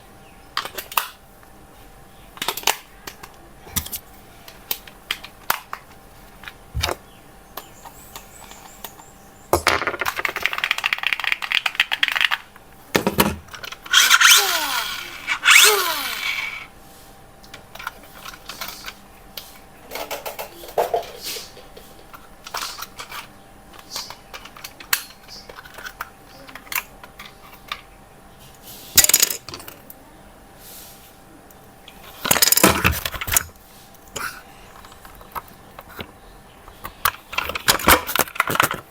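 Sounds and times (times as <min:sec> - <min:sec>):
small parts clicking and rattling: 0:07.8 - 0:16.7, 0:17.4 - 0:19.0, 0:22.0 - 0:27.9, 0:28.9 - 0:30.0, 0:32.0 - 0:34.1, 0:34.7 - 0:38.9
buzzing: 0:13.8 - 0:16.7.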